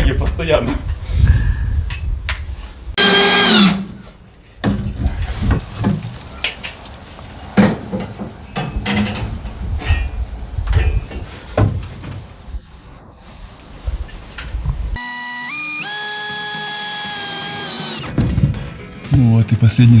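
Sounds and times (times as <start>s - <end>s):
pitched whine: 13.2s - 18.1s.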